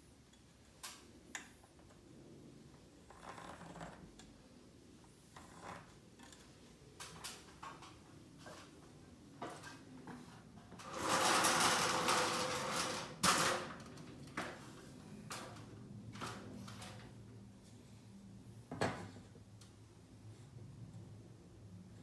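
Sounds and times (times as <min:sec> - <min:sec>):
scraping rustles: 0:06.5 - 0:15.6.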